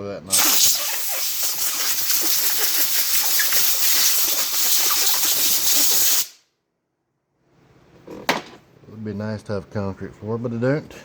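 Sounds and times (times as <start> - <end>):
compressed air blowgun hissing: 0.3 - 6.4.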